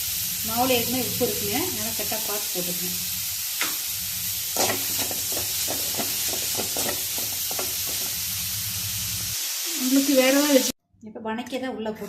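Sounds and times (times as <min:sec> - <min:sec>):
vegetables sizzling in oil: 0:00.0 - 0:10.8
spatula scraping pan: 0:04.5 - 0:08.2.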